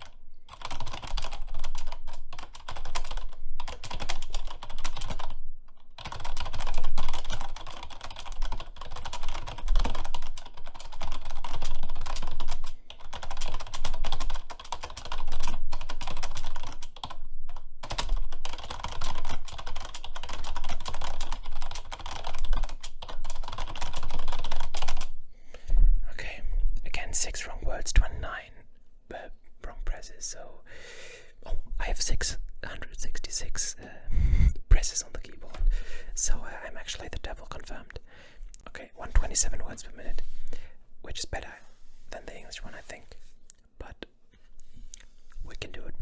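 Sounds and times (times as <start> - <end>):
fast typing on keyboard: 0.0 - 25.2.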